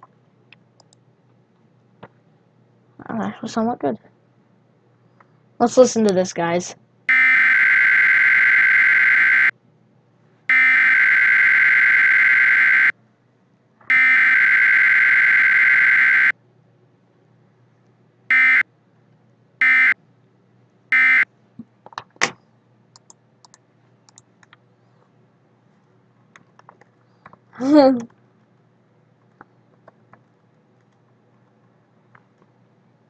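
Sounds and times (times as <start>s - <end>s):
buzzy digital data tones: 7.1s - 9.5s, 10.5s - 12.9s, 13.9s - 16.3s.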